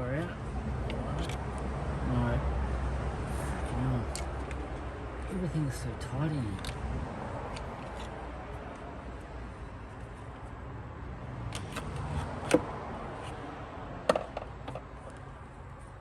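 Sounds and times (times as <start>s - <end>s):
sharp clicks and knocks: 11.5s - 12.7s, 14.1s - 14.9s.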